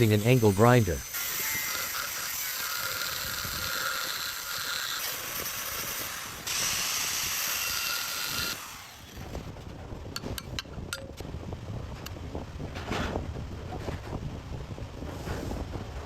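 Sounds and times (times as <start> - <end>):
angle grinder cutting metal: 0.0 - 9.2.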